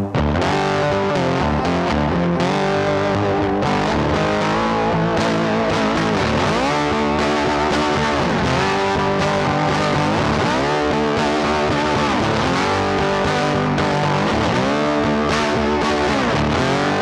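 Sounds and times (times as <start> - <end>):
distorted electric guitar music: 0.0 - 17.0.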